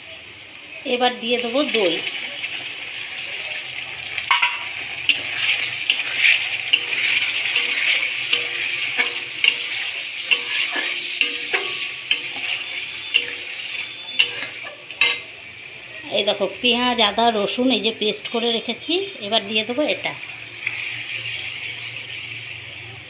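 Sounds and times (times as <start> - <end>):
onions sizzling in oil: 0.0 - 23.0
spatula clicking against pan: 5.1 - 15.3.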